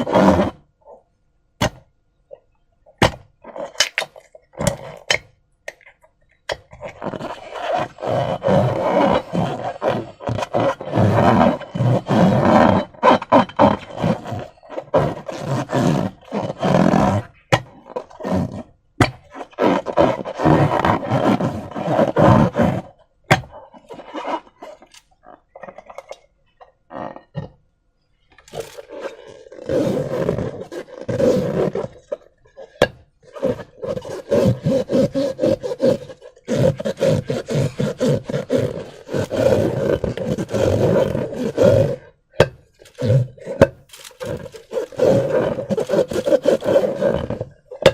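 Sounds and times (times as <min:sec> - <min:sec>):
rubbery groaning and squelching: 0:00.0 - 0:01.8, 0:02.9 - 0:05.3, 0:06.4 - 0:27.6, 0:28.3 - 0:47.9.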